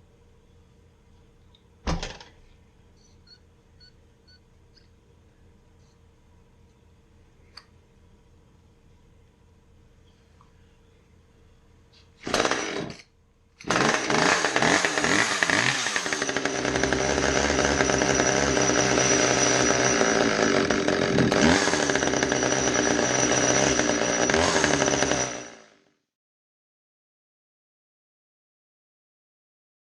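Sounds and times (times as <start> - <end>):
chainsaw engine revving: 12.2 - 13.0, 13.6 - 25.8.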